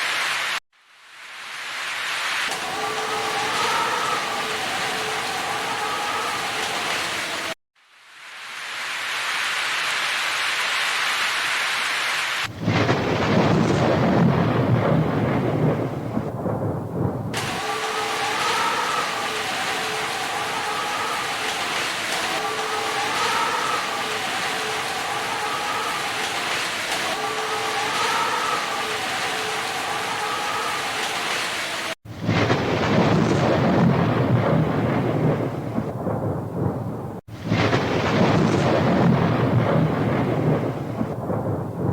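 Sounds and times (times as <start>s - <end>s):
steady rain hiss: 0.0s - 41.9s
low rumble of thunder: 12.5s - 24.0s, 32.1s - 41.9s.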